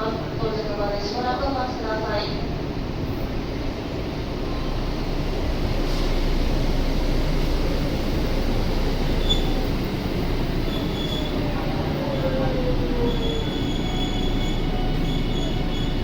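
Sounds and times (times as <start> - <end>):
train rumbling: 0.0 - 16.0
faint wheel squeals: 9.2 - 9.7, 10.7 - 11.5, 12.2 - 16.0.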